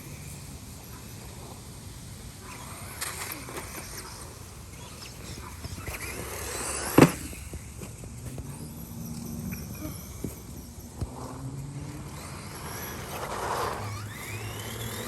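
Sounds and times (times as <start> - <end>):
high motor whine: 0.0 - 15.0
rc car tyres scuffing: 2.4 - 8.8, 9.5 - 15.0.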